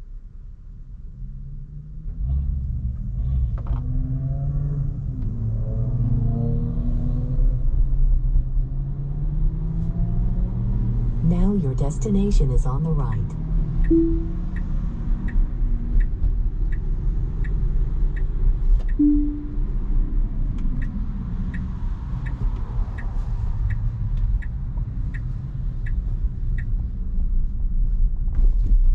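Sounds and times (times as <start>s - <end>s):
road rumble in car cabin: 0.0s - 28.9s
turn signal ticking: 11.2s - 27.7s
short chime: 13.9s - 14.5s, 19.0s - 19.6s.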